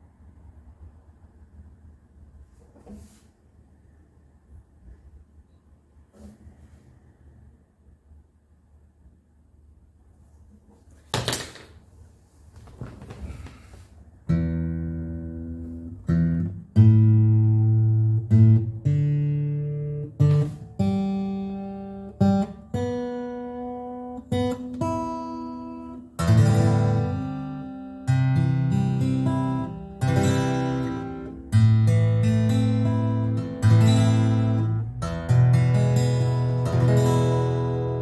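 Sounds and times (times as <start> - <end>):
guitar handling noise: 2.5 - 3.3, 6.1 - 6.9, 10.5 - 16.4
acoustic guitar strummed chords: 14.3 - 38.0.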